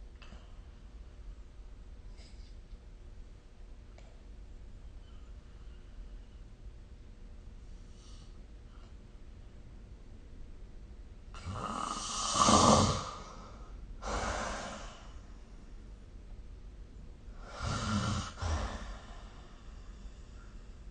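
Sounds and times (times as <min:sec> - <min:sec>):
soft breathing: 0:02.0 - 0:02.8, 0:04.1 - 0:06.6, 0:07.6 - 0:09.6, 0:11.9 - 0:15.8, 0:17.3 - 0:20.9
person snoring: 0:11.4 - 0:15.0, 0:17.4 - 0:19.4.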